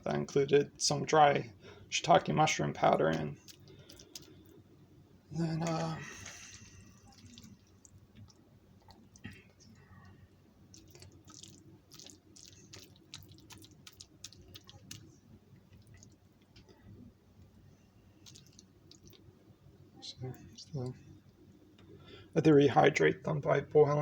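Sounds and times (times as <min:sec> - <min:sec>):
faint wet chewing: 0:03.0 - 0:04.7, 0:05.6 - 0:17.6, 0:18.2 - 0:19.3.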